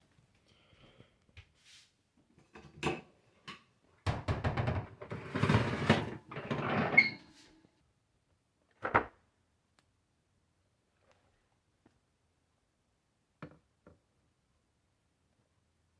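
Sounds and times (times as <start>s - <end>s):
plastic object knocking and rattling: 4.1s - 5.2s.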